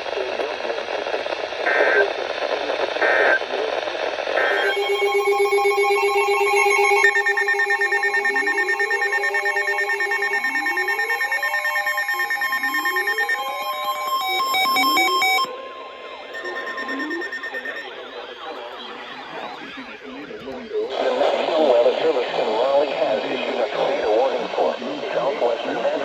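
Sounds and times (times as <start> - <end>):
radio static: 0.0 - 26.0
electronic alert tone: 4.4 - 18.4
digital data tone bursts: 4.4 - 19.8.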